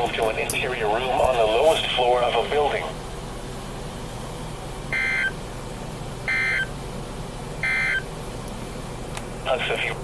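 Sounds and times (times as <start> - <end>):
radio hiss: 0.0 - 3.0, 9.4 - 10.0
data tone bursts: 4.9 - 5.4, 6.3 - 6.7, 7.6 - 8.0.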